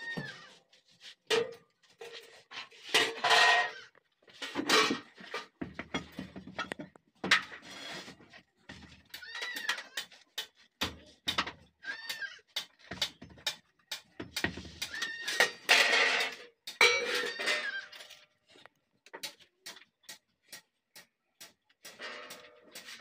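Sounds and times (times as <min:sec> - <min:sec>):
iron clanks and knocks: 0:14.3 - 0:17.8.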